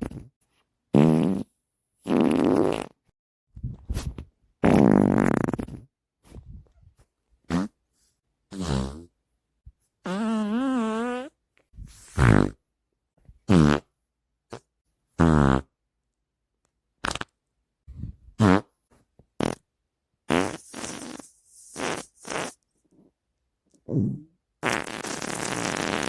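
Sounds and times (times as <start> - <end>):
human farts: 0.0 - 0.3, 0.9 - 3.0, 3.9 - 5.9, 7.5 - 7.8, 8.5 - 9.1, 10.0 - 11.4, 12.0 - 12.6, 13.5 - 13.9, 14.5 - 15.8, 17.0 - 17.4, 18.4 - 18.8, 19.4 - 19.7, 20.3 - 22.6, 23.8 - 26.0.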